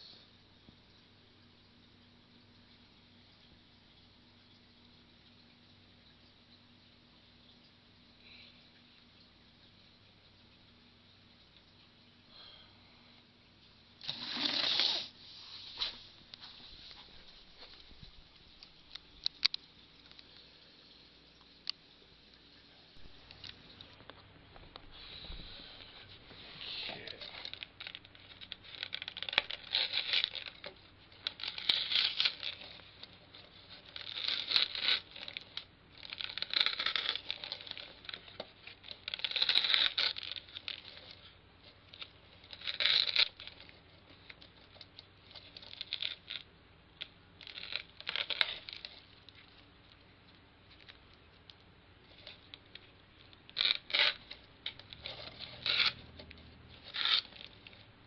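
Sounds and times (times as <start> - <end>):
packaging rustling and crinkling: 23.0 - 46.5, 47.4 - 57.9.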